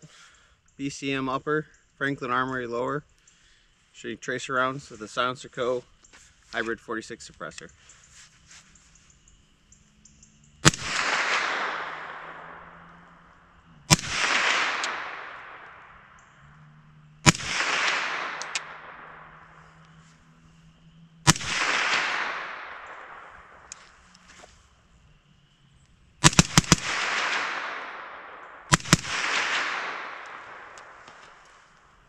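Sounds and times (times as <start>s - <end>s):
gunshot echo: 10.6s - 13.3s, 13.9s - 16.2s, 17.2s - 19.6s, 21.2s - 23.8s, 26.2s - 31.6s
suppressed gunshots: 10.6s - 24.5s, 26.2s - 31.9s.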